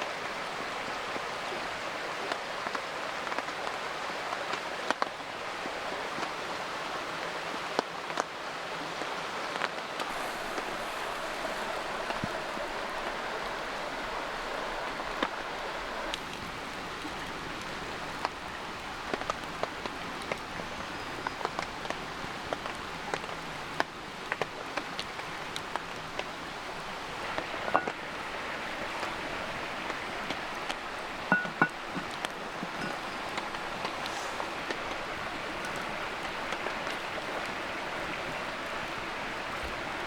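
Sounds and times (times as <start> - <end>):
raindrops tapping surfaces: 9.0 - 40.0
rain hissing: 10.0 - 24.3, 25.1 - 40.0.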